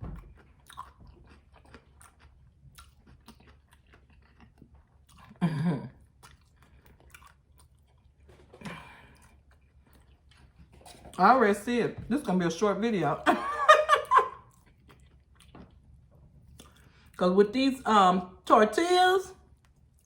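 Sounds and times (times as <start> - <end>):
chewing and biting food: 0.0 - 11.4, 14.0 - 17.2.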